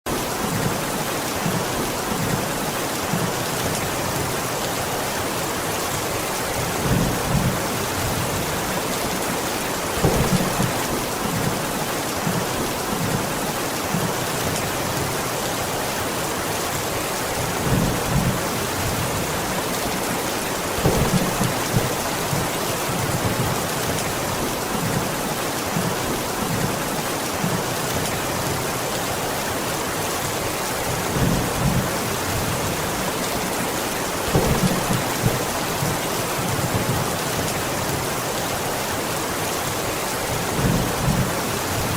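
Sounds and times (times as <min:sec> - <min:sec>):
rain hissing: 0:06.4 - 0:13.4, 0:17.0 - 0:24.0, 0:29.2 - 0:39.2.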